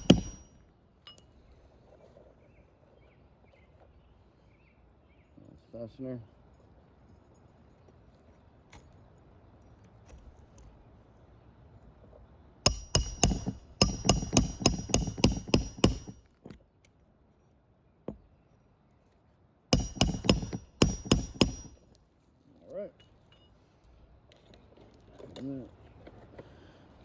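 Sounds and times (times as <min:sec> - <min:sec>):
hammer striking nails: 0:00.0 - 0:00.5, 0:12.7 - 0:16.2, 0:19.7 - 0:21.8.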